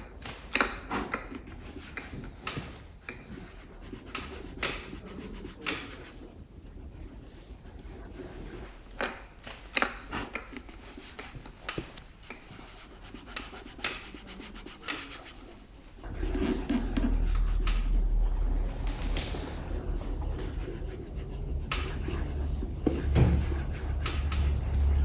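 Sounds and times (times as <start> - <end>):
rubbing strokes on leather: 3.0 - 6.3, 10.0 - 17.9
low rumble: 15.7 - 25.0.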